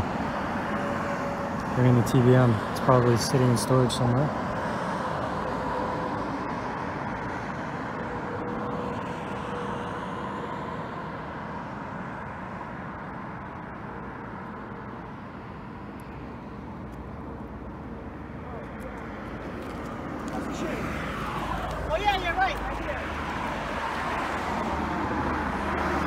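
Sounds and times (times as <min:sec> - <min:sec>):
road traffic: 0:00.0 - 0:26.0.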